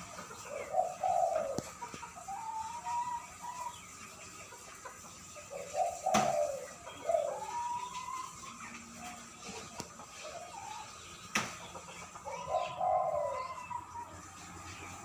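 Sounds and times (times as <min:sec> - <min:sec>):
decoy bird calling: 0:00.0 - 0:03.7.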